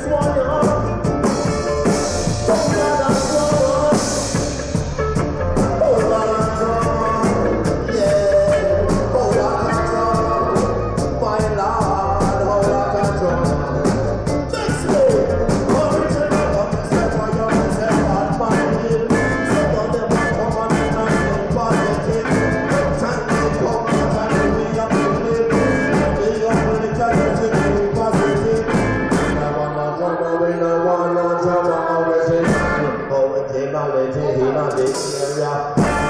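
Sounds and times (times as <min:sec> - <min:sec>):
live reggae band playing: 0:00.0 - 0:36.0
drum hits: 0:35.8 - 0:36.0.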